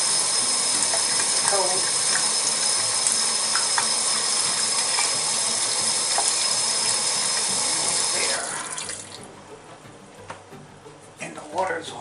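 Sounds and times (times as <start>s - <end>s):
water running into sink: 0.1s - 9.2s.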